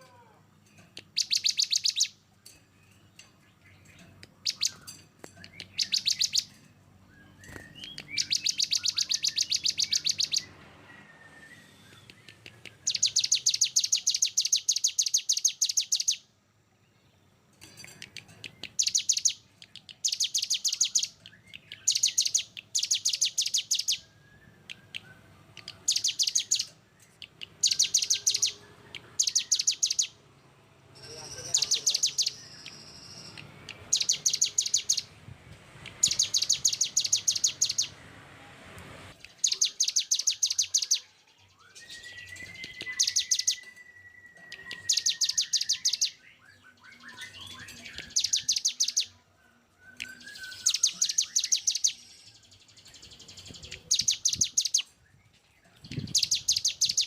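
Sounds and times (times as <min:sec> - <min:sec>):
faint bird chirps: 0:00.0 - 0:30.2, 0:31.0 - 0:35.1, 0:35.8 - 0:38.0, 0:39.1 - 0:57.0
songbird rapid high notes: 0:31.0 - 0:35.1.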